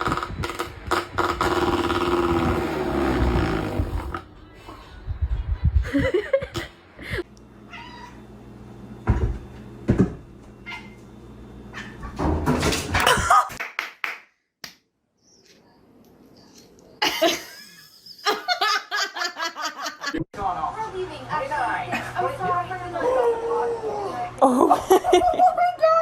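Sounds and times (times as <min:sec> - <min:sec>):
cat meowing: 0:07.7 - 0:08.2.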